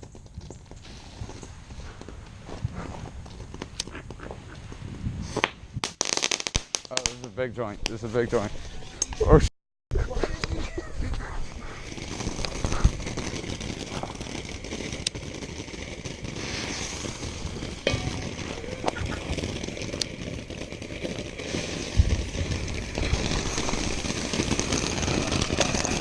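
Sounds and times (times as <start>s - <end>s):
firework fountain hissing: 0.0s - 4.2s, 10.4s - 26.0s.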